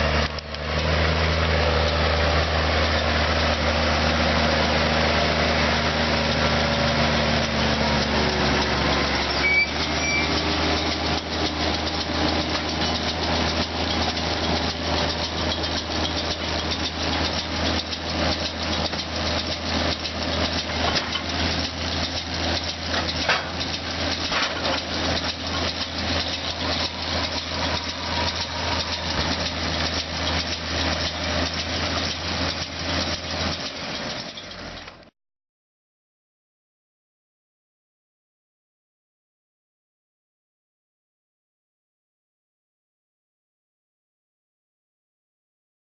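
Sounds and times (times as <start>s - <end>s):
tractor diesel engine running: 0.0s - 35.1s
fast mechanical rattle: 0.2s - 35.1s.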